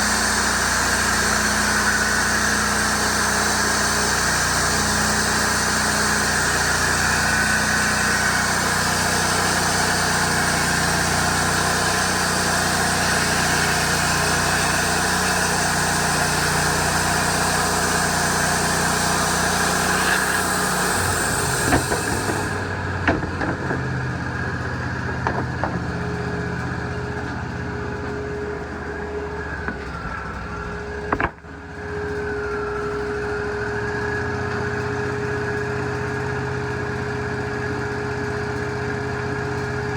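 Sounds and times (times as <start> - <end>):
engine hum with wavering whine: 0.0 - 39.9
sawmill engine and saw running: 0.0 - 39.9
knocks: 21.0 - 26.8, 31.1 - 31.4.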